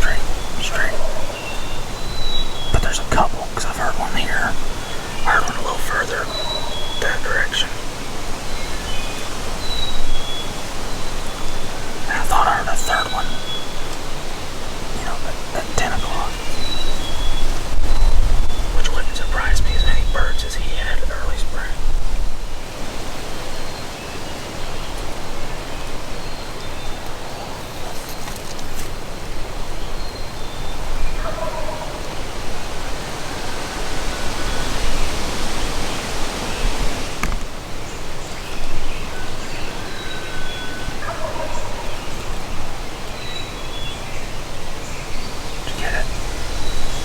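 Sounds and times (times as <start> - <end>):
wild turkey gobbling: 2.7 - 7.8, 31.2 - 32.1, 41.0 - 41.9
wind noise on microphone: 7.0 - 23.6, 32.3 - 39.4, 44.4 - 47.0.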